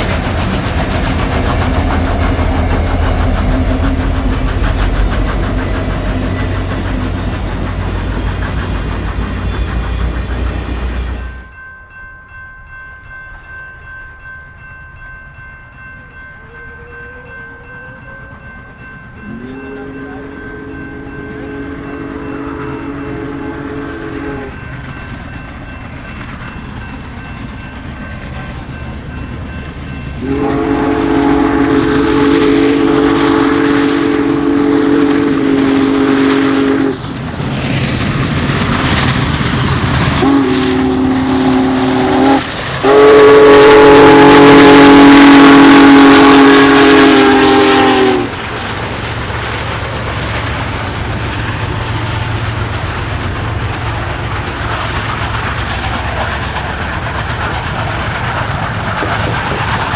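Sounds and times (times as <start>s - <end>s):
steam hiss: 0.0s - 11.5s, 29.7s - 59.9s
train rumble and rail clatter: 0.0s - 59.9s
steam whistle chord: 19.2s - 24.7s, 30.2s - 37.0s, 40.2s - 48.6s.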